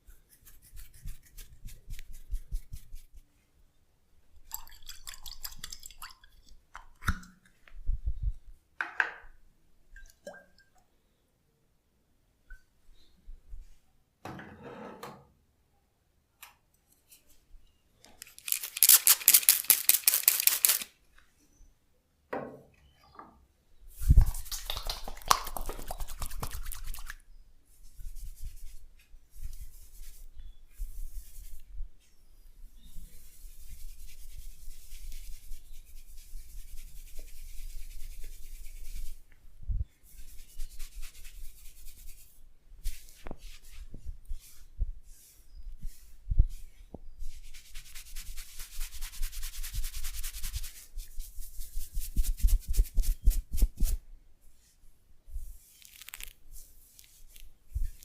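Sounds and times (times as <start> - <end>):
hands rubbing hair and skin: 0.0 - 3.2, 18.2 - 20.9, 23.9 - 27.2, 27.8 - 32.2, 33.1 - 39.3, 40.0 - 54.8, 55.4 - 58.0.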